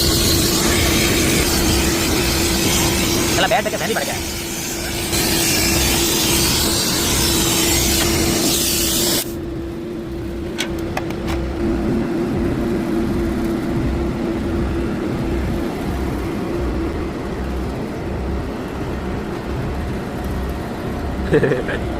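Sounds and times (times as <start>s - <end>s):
loud hiss: 0.0s - 9.4s
steady machine hum: 0.0s - 21.9s.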